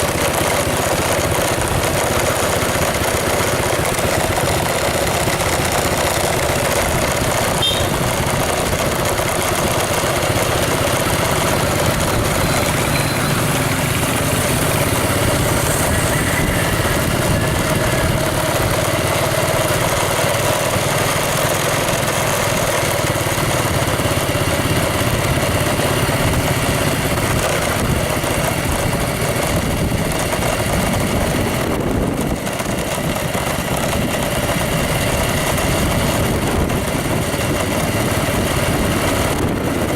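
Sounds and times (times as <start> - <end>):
vehicle engine running: 0.0 - 39.9
loud rushing noise: 1.4 - 20.4.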